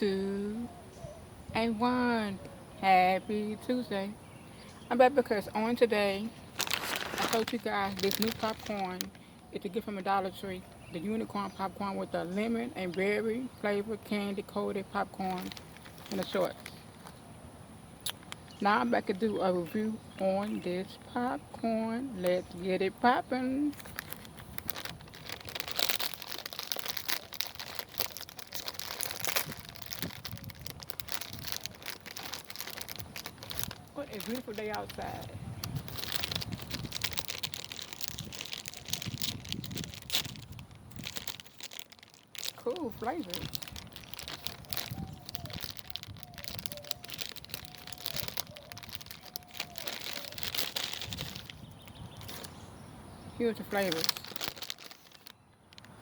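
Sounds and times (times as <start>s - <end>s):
plastic snack bag crinkling: 5.3s - 10.4s, 14.9s - 17.1s, 23.5s - 52.6s, 53.4s - 56.0s.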